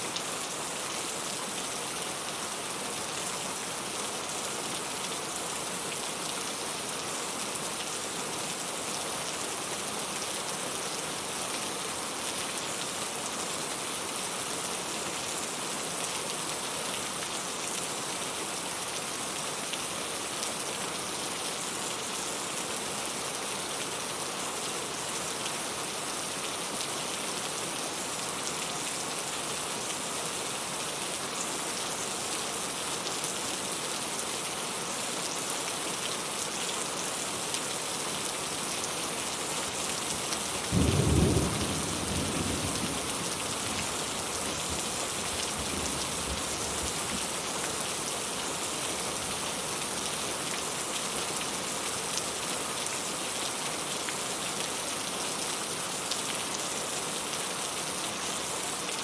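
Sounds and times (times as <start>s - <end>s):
rain pattering on surfaces: 35.0s - 59.0s
low rumble of thunder: 40.8s - 43.9s.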